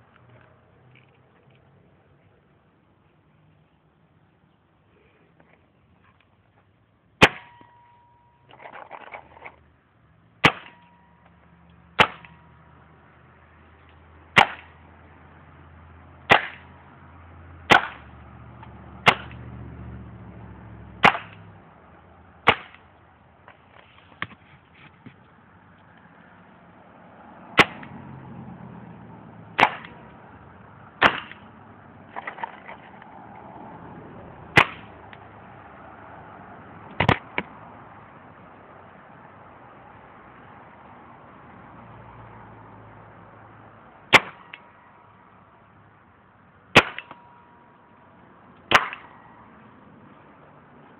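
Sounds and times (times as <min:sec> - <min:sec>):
paintball gun shots: 0:10.4 - 0:10.8, 0:12.0 - 0:12.4, 0:14.4 - 0:14.8, 0:16.3 - 0:16.7, 0:17.7 - 0:18.1, 0:19.0 - 0:19.4, 0:21.0 - 0:21.4, 0:22.5 - 0:22.8, 0:29.6 - 0:30.0, 0:31.0 - 0:31.5, 0:34.6 - 0:34.9, 0:46.8 - 0:47.2, 0:48.7 - 0:49.1.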